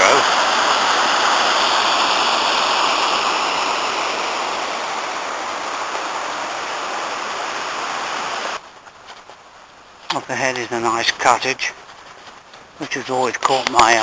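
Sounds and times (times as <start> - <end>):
stream water rushing: 0.0 - 8.6.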